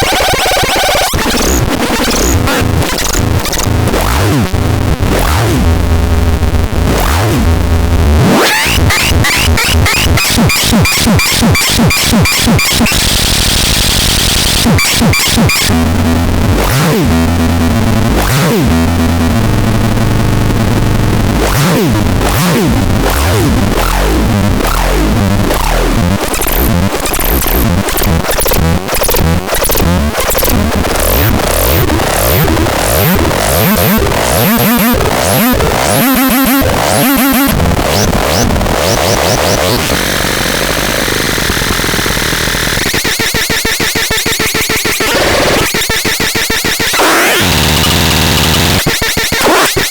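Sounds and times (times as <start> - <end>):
buzzing synth bed: 23.1 - 39.8
sliding synth pitch sweeps: 31.0 - 37.6.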